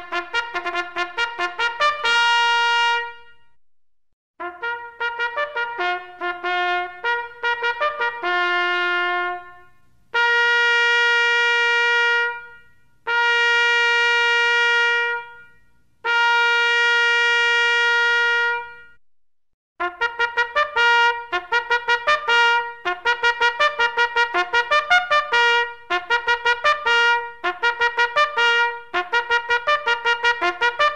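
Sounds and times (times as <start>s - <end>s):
trumpet playing: 0.0s - 3.6s, 4.4s - 19.0s, 19.8s - 30.9s.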